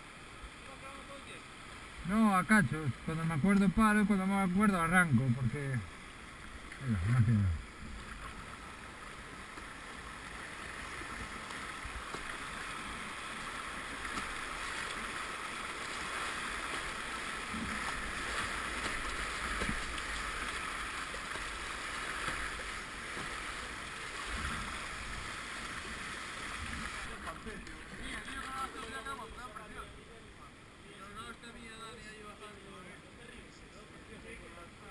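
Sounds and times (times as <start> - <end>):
river water rushing in rapids: 0.0 - 29.8.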